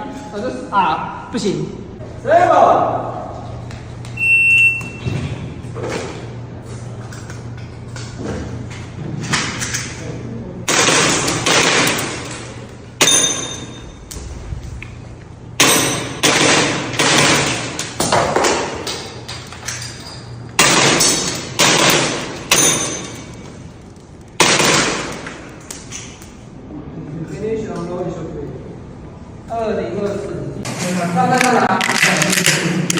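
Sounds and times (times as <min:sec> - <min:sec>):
airsoft pistol shots: 0:10.7 - 0:12.3, 0:15.6 - 0:18.7, 0:20.6 - 0:23.0, 0:24.4 - 0:25.2.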